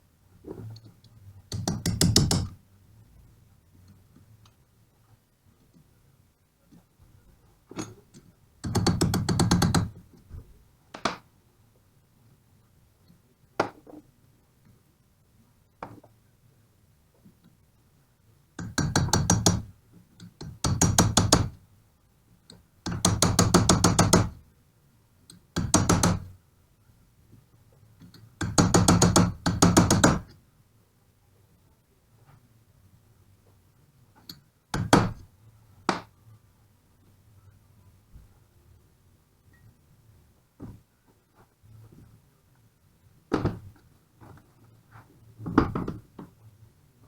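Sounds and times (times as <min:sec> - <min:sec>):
tools knocking: 0:01.5 - 0:02.5, 0:18.6 - 0:19.6.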